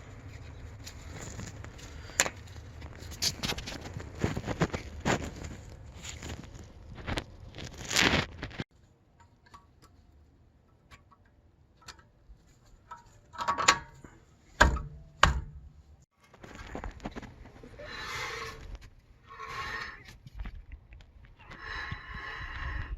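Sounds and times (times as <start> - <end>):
sharp metal knocks: 14.6 - 15.7.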